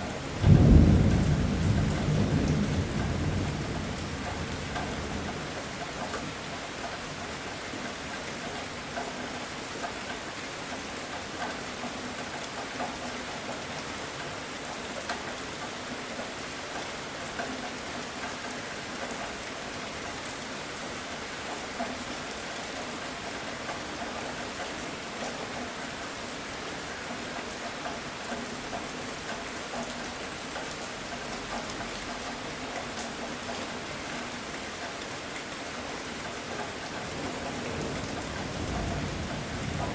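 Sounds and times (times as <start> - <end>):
heavy rain falling: 0.0 - 39.9
thunder rumble: 0.4 - 5.4, 37.2 - 39.9.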